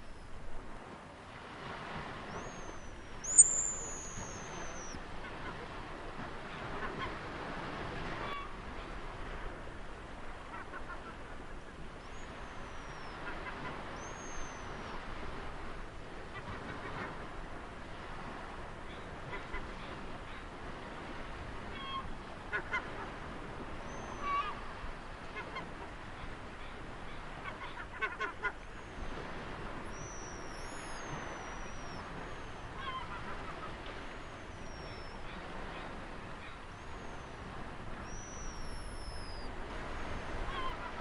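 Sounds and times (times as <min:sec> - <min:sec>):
ocean waves: 0:00.0 - 0:41.0
birds harsh calls: 0:03.2 - 0:04.9
bird whistles falling in pitch: 0:03.2 - 0:05.0, 0:38.1 - 0:39.5.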